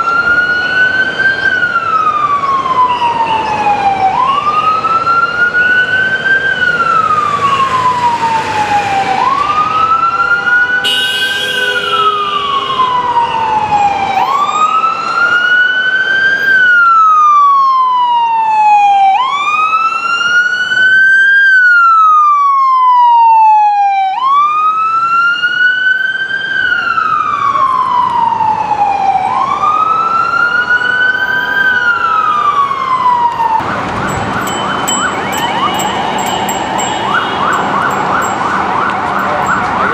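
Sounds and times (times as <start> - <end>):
siren wailing: 0.0 - 39.9
vehicle horn: 10.6 - 13.0, 34.6 - 37.9.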